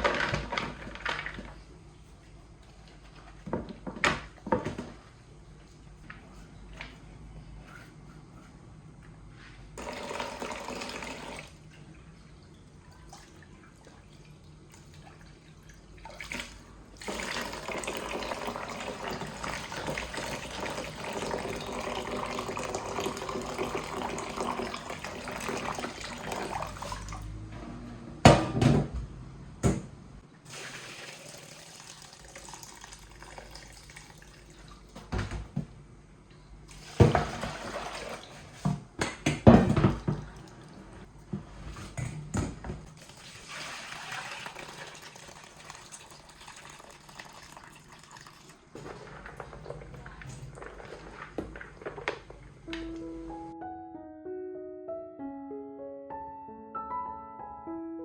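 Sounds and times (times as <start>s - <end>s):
tap water running into sink: 9.8s - 11.6s, 16.1s - 27.2s, 30.5s - 34.7s, 43.0s - 52.2s.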